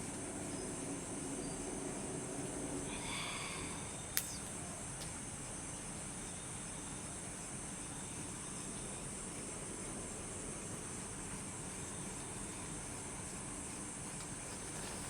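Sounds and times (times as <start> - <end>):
wind: 0.0 - 15.0
high-pitched hiss: 2.4 - 15.0
light rain: 3.9 - 15.0
sharp click: 4.2 - 5.1.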